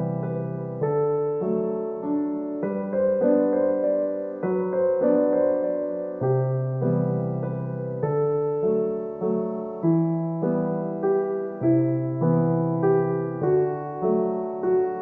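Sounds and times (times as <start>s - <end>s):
gentle piano chords: 0.0s - 15.0s.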